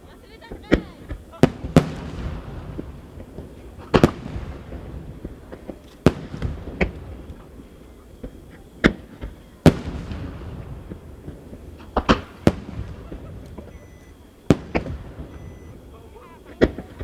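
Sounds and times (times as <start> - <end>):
firework shells booming with echo: 0.0 - 17.0.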